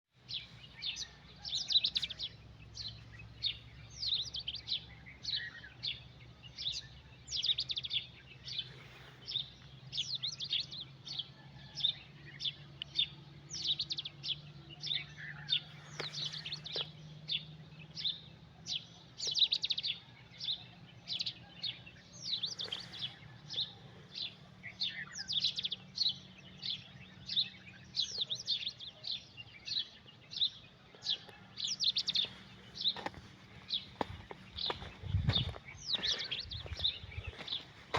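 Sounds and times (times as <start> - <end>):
birds chirping: 0.1 - 37.9.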